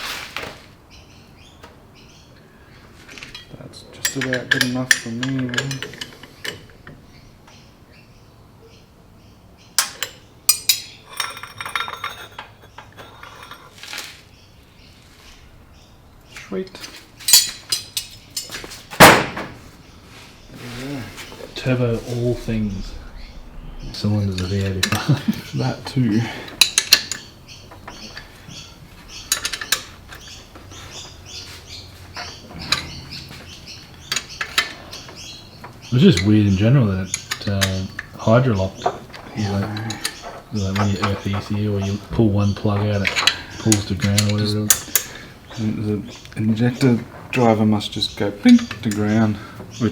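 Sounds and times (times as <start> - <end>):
small birds chirping: 0.8 - 19.0, 19.6 - 49.9
metal tools clinking on workbench: 3.2 - 7.0, 9.8 - 14.0, 17.2 - 19.1, 26.4 - 30.4.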